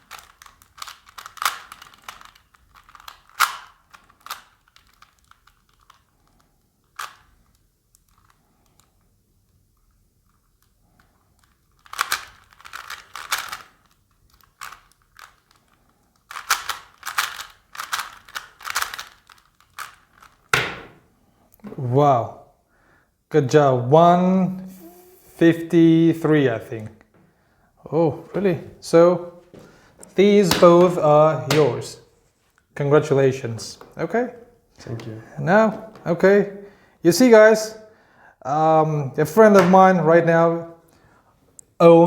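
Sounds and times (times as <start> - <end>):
rubik's cube plastic clicking: 0.0 - 9.1, 9.7 - 20.6.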